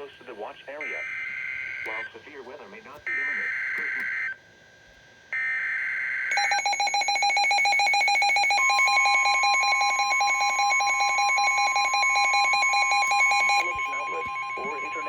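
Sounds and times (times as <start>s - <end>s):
steady alarm tone: 5.4s - 15.0s
header data burst: 8.5s - 15.0s
rapidly pulsing electronic tone: 11.4s - 15.0s.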